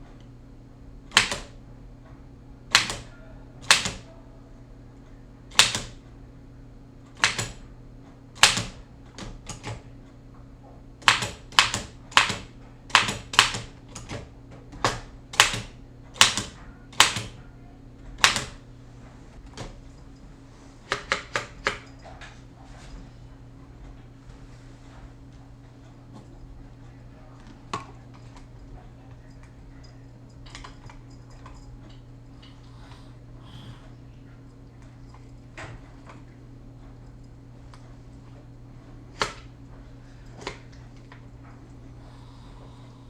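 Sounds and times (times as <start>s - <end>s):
faint low hum: 0.0s - 43.0s
typewriter keystroke clacks: 1.1s - 1.6s, 2.7s - 4.1s, 5.5s - 6.0s, 7.1s - 7.6s, 8.4s - 9.9s, 11.0s - 17.4s, 18.1s - 18.6s, 20.8s - 22.0s, 30.4s - 31.6s.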